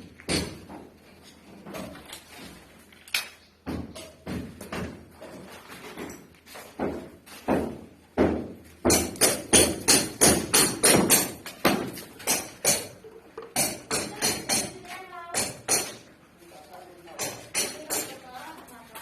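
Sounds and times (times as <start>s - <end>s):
hammer blows ringing on metal: 8.9s - 12.9s.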